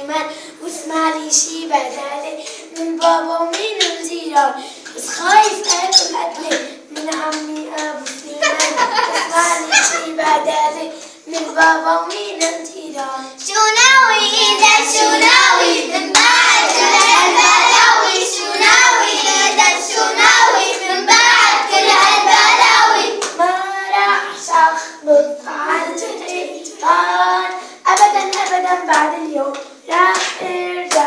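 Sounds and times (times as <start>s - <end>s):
children singing: 2.2s - 31.0s
hand claps: 2.4s - 4.1s, 6.5s - 8.9s, 14.6s - 17.4s, 27.9s - 31.0s.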